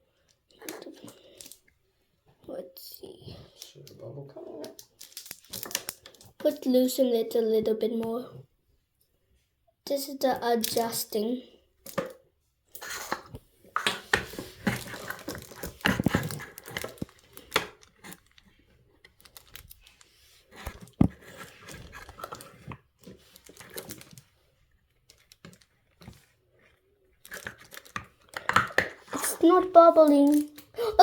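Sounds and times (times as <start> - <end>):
plastic bottle clicks and crinkles: 4.6 - 6.5, 11.8 - 12.2, 12.8 - 24.4, 25.0 - 31.0.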